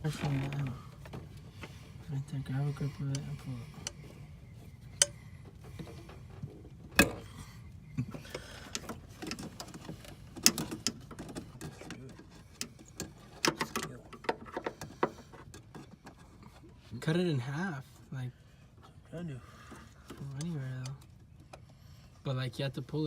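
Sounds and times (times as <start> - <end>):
tools clicking and knocking: 6.9 - 7.2, 8.3 - 16.2.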